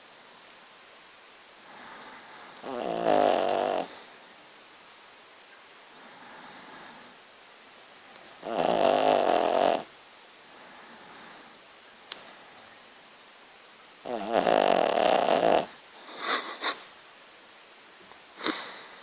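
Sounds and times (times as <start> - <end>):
soft breathing: 1.6 - 2.7, 5.8 - 7.2, 10.4 - 12.7, 18.4 - 19.0
dog snoring: 2.6 - 4.0, 8.4 - 9.9, 14.0 - 15.8.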